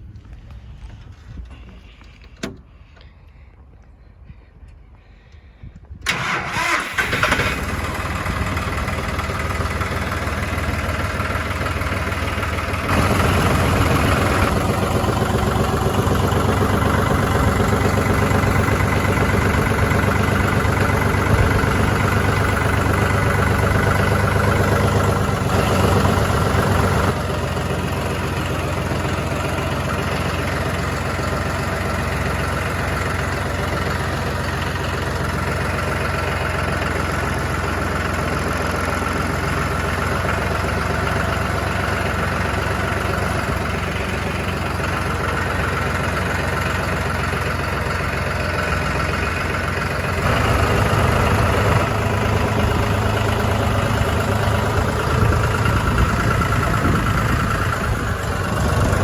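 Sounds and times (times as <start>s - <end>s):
engine starting: 6.0s - 8.5s
engine idling and revving: 6.0s - 59.0s.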